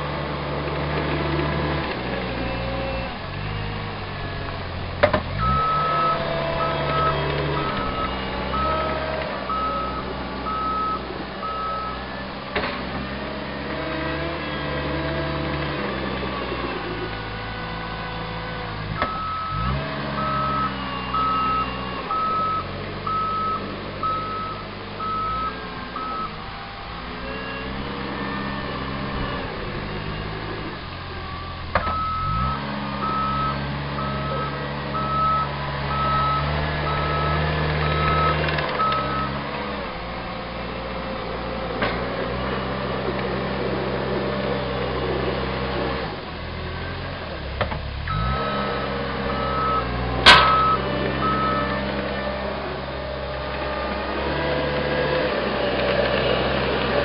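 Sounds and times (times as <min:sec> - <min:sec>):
loader diesel engine under load: 0:00.0 - 0:57.0
reversing alarm beeps: 0:05.4 - 0:12.0, 0:19.0 - 0:27.8, 0:31.2 - 0:39.4, 0:48.1 - 0:51.8.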